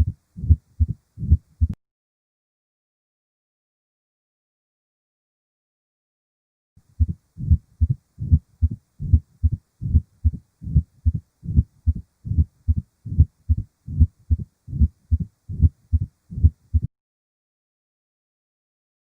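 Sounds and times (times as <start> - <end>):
heartbeat lub-dub: 0.0 - 1.8, 7.0 - 16.9.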